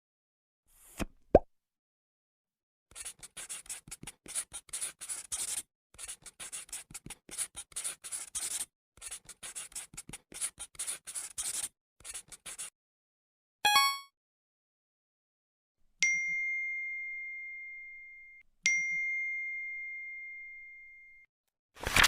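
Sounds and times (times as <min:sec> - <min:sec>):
pen scribbling on paper: 0:02.9 - 0:12.7.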